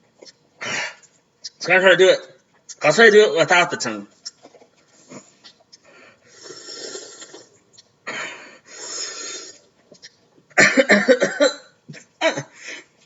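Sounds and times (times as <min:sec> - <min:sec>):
sucking through a drinking straw: 0:06.3 - 0:07.6, 0:08.7 - 0:10.2.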